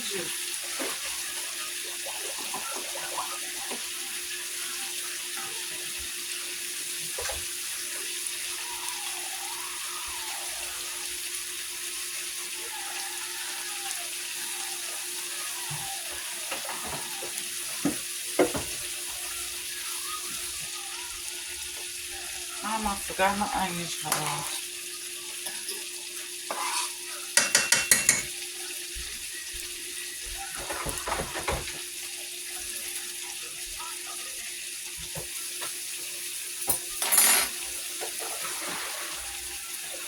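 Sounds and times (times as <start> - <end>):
steak sizzling in a pan: 0.0 - 40.0
utensil knocking against pan: 27.4 - 28.3.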